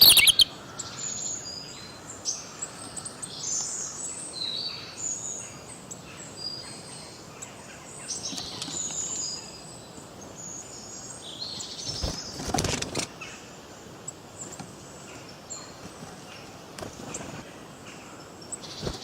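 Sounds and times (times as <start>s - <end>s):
songbirds chirping: 0.0s - 19.0s.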